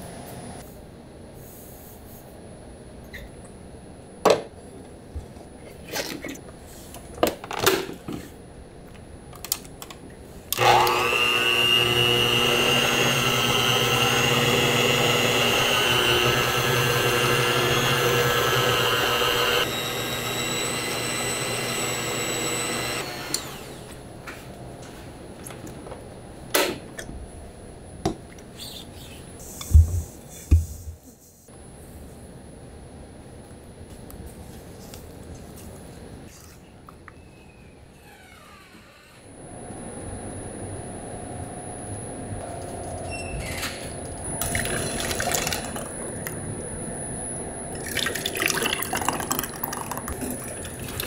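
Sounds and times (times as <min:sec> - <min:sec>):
food mixer motor whining: 0:10.5 - 0:24.0.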